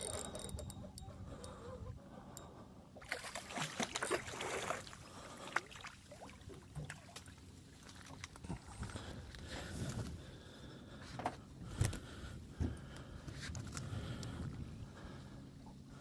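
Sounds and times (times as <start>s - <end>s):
water splashing against boat: 3.0s - 8.7s.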